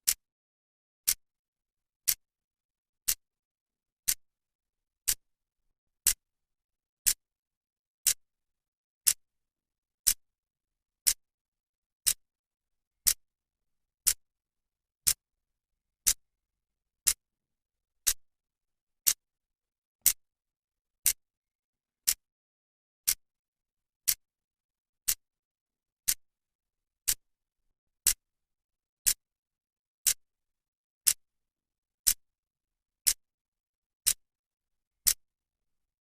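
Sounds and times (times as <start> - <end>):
clock ticking: 17.0 - 17.2, 19.0 - 19.2, 22.0 - 22.3, 33.0 - 33.2.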